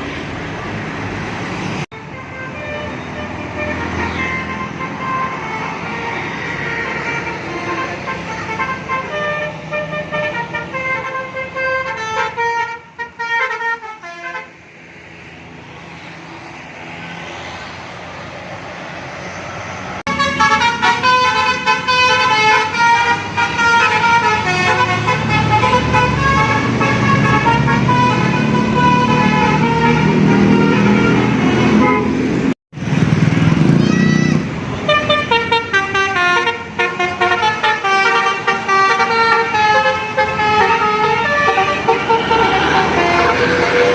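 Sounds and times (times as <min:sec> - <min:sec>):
bus musical air horn tune: 0:02.0 - 0:14.6, 0:20.1 - 0:32.3, 0:34.8 - 0:43.9.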